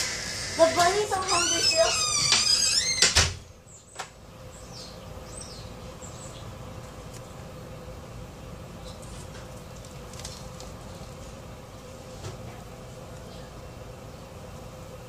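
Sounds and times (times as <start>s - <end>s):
steady low hum: 3.2s - 15.0s.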